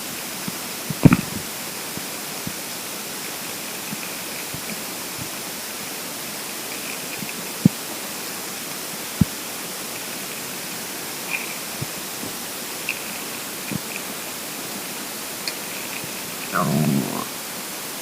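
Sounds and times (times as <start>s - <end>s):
recording hiss: 0.0s - 18.0s
stomach gurgling: 0.9s - 1.4s, 15.8s - 17.4s.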